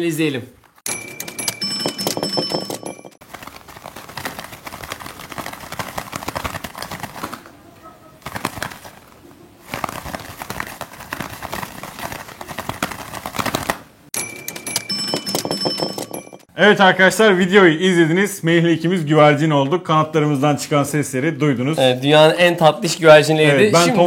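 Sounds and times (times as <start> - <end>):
leather glove flapping: 3.2 - 14.0.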